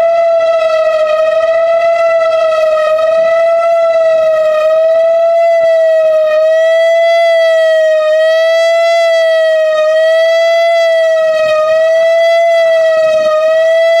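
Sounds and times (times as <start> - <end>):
wavering tornado siren tone: 0.0 - 14.0.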